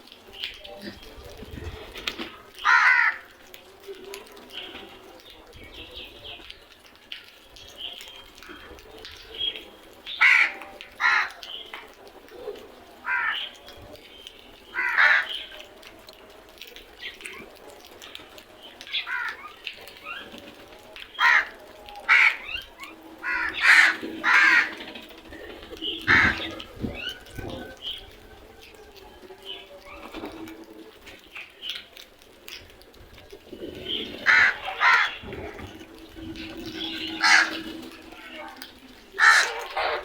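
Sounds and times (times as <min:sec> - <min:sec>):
crows cawing: 0:02.5 - 0:03.5, 0:10.1 - 0:11.6, 0:13.0 - 0:13.7, 0:14.6 - 0:15.6, 0:18.9 - 0:20.5, 0:21.1 - 0:27.2, 0:33.9 - 0:38.6, 0:39.2 - 0:40.0.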